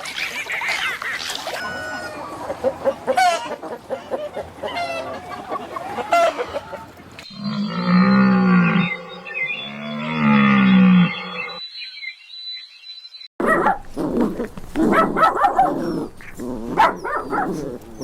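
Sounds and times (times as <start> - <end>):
animal long drawn-out calls: 7.3 - 11.6.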